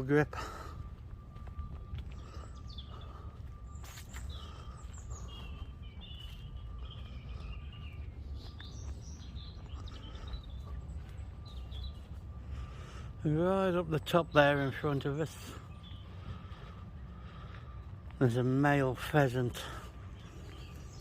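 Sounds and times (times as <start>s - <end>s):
low outdoor rumble: 0.0s - 21.0s
small birds chirping: 0.0s - 21.0s.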